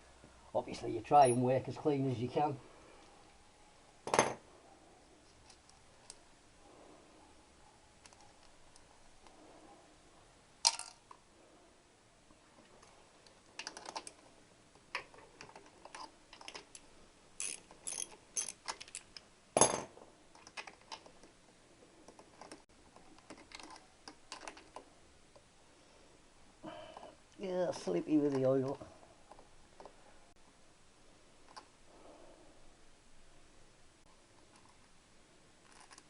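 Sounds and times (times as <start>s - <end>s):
metal tools and parts clinking: 1.1s - 1.6s, 17.4s - 19.9s.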